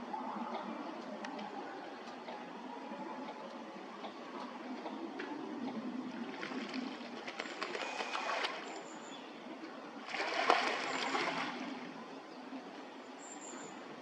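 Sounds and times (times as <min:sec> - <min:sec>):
ducks splashing in water: 0:06.1 - 0:08.9, 0:10.0 - 0:12.0.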